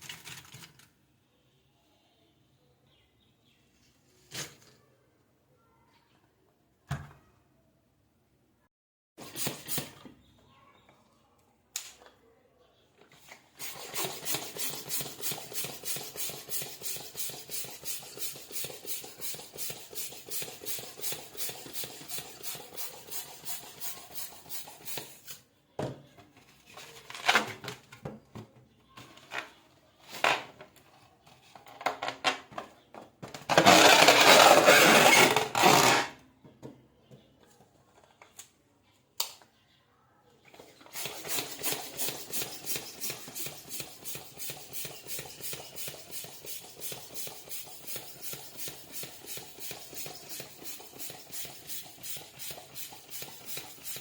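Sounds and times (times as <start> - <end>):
balloon pump strokes: 9.2 - 10.1, 13.2 - 25.4, 33.5 - 36.1, 40.6 - 54.0
rubbing of balloon rubber: 40.9 - 54.0.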